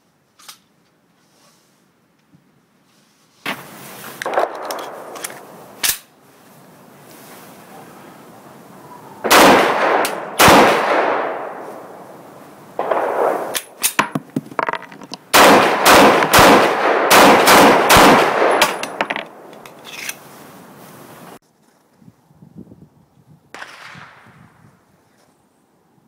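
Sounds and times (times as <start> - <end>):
faint sharp cracks: 3.5 - 6.1, 9.3 - 12.0
pistol shots: 9.2 - 12.1, 12.8 - 14.0, 15.3 - 19.5, 23.6 - 24.3.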